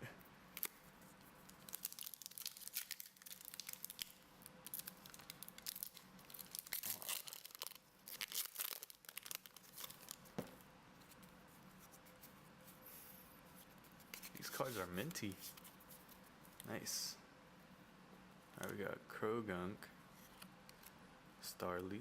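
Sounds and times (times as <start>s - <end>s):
foil wrapper tearing and crinkling: 1.5s - 10.3s.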